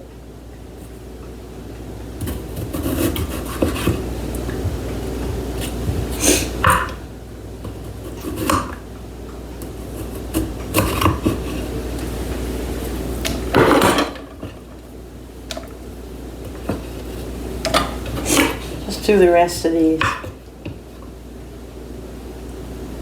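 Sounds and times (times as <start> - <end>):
steady low hum: 0.0 - 23.0
dishes and utensils clattering: 13.5 - 14.8.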